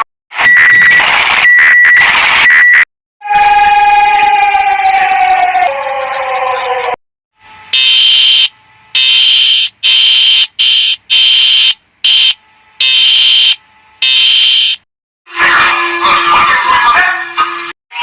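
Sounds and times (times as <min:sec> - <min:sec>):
downward gliding alarm tone: 0:03.2 - 0:08.4.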